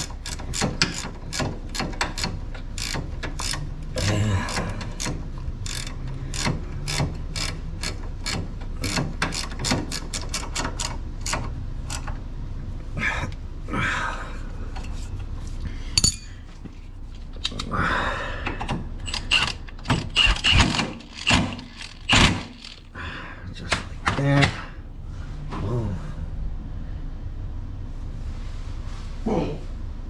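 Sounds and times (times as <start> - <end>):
ratchet wrench clicking: 0.0 - 12.2, 19.0 - 22.9
metallic clinks: 16.0 - 16.4.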